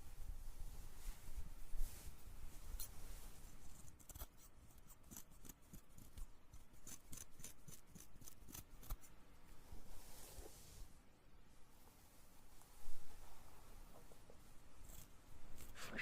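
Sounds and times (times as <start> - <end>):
scissors snipping: 3.9 - 9.1.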